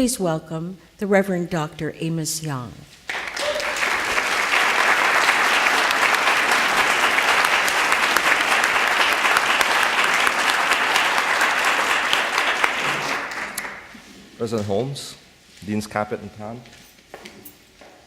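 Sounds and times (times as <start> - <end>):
audience applauding: 3.0 - 14.0.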